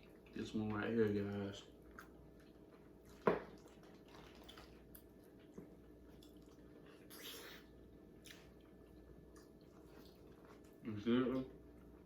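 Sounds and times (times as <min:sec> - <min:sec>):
wet chewing of crab: 0:01.7 - 0:10.8.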